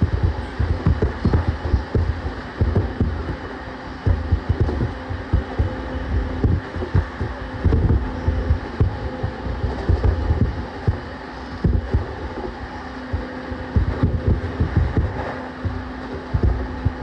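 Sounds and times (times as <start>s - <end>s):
faint steady hum: 0.0s - 17.0s
low thumps: 0.0s - 17.0s.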